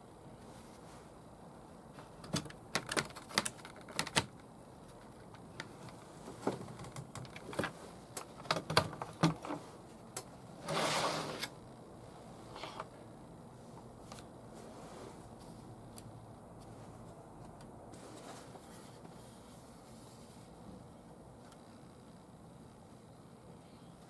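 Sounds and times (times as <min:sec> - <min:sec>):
scraping rustle: 0:10.6 - 0:11.5, 0:17.9 - 0:20.6.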